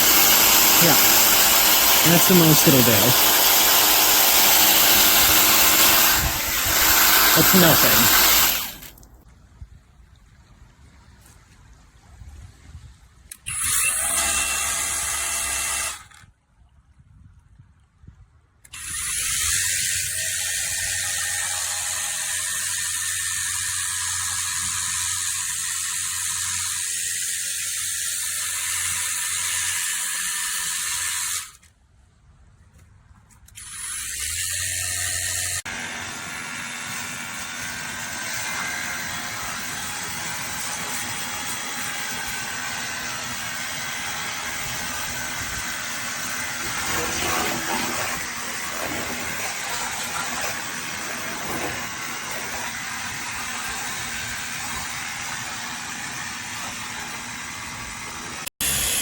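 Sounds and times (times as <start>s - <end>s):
water spray hissing: 0.0s - 9.1s
pressure washer pump humming: 0.0s - 9.2s, 33.6s - 59.0s.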